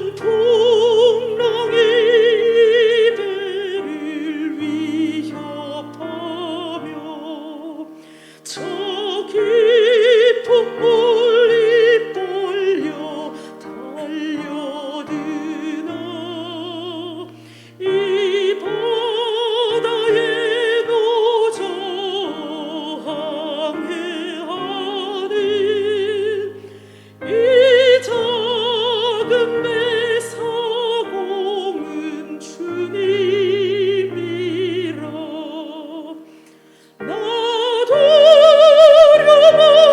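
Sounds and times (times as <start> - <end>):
operatic solo singing: 0.0 - 39.9.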